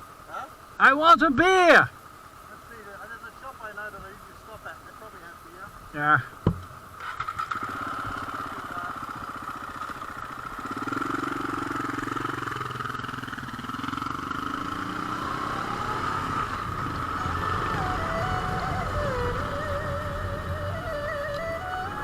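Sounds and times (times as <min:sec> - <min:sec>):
motorcycle engine accelerating: 0:07.0 - 0:22.0.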